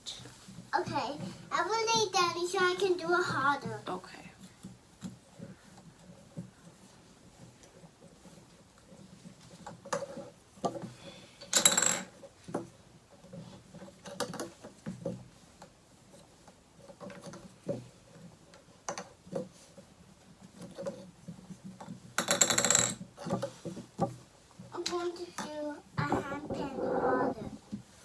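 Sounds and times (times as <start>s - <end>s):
plastic toys clattering on table: 11.4s - 12.7s, 22.2s - 23.8s.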